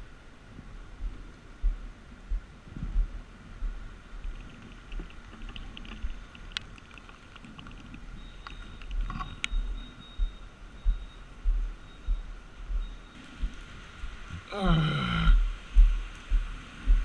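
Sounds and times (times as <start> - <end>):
wind buffeting microphone: 0.0 - 14.6, 15.3 - 17.0
faint ticks: 1.0 - 14.3
faint high whine: 7.9 - 16.4.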